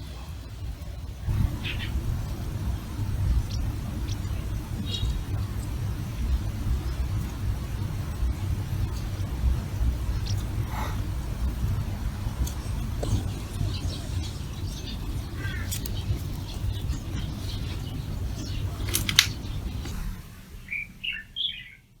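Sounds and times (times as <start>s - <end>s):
low traffic rumble: 0.0s - 22.0s
faint clicks and chirps: 12.4s - 20.0s.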